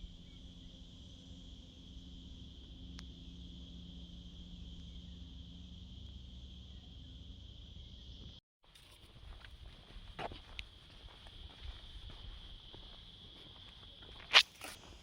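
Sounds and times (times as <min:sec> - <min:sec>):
insect chorus drone: 0:00.0 - 0:15.0.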